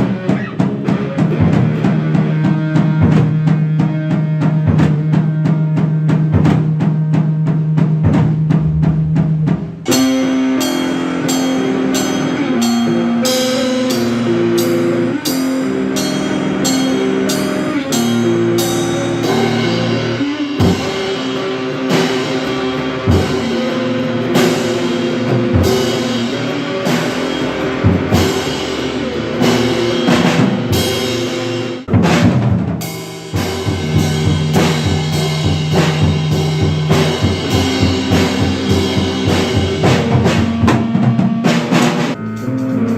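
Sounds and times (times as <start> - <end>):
electric guitar riff: 0.0 - 7.6, 8.2 - 31.9, 33.4 - 42.9
bass guitar: 0.0 - 32.5, 33.3 - 42.9
fast drumming: 0.0 - 42.9
cymbal crashes: 8.5 - 31.9, 32.9 - 40.6.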